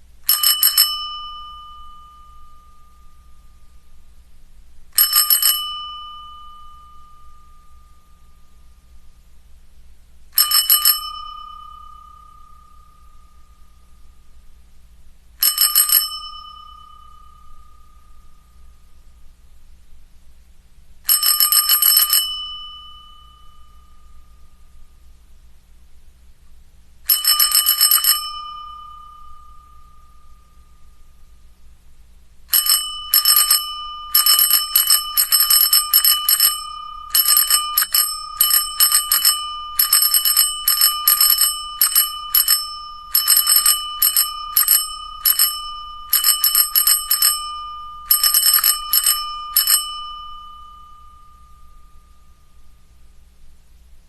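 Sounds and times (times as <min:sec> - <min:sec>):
bicycle bell ringing: 0:00.3 - 0:03.6, 0:05.0 - 0:08.4, 0:10.4 - 0:13.7, 0:15.4 - 0:18.6, 0:21.1 - 0:24.6, 0:27.1 - 0:31.1, 0:32.5 - 0:52.6.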